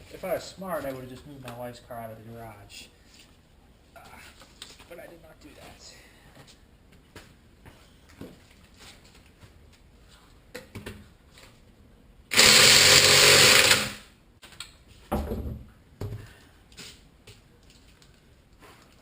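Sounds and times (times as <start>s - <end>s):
power tool running: 12.3s - 14.1s.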